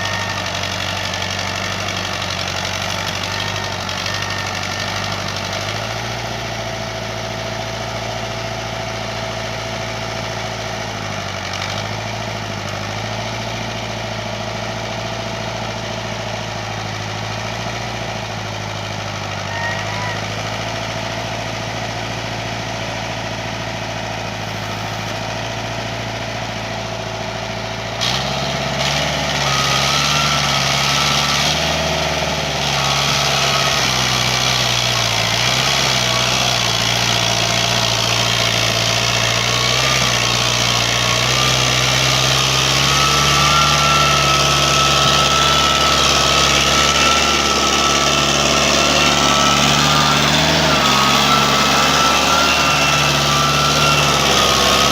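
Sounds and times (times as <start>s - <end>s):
tractor engine running: 0.0s - 54.9s
thin whine: 40.0s - 54.9s.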